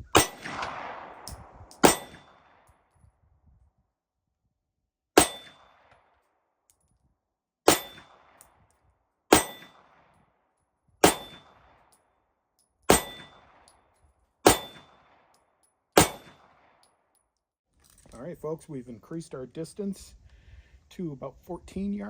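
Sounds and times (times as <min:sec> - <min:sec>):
pistol shots: 0:00.0 - 0:02.7, 0:05.2 - 0:06.0, 0:07.7 - 0:08.4, 0:09.3 - 0:10.1, 0:11.0 - 0:11.8, 0:12.9 - 0:13.7, 0:14.4 - 0:15.3, 0:16.0 - 0:16.8.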